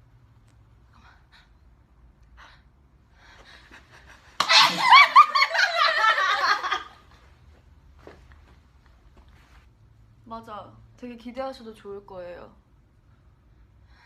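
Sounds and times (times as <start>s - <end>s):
women laughing: 3.7s - 7.0s.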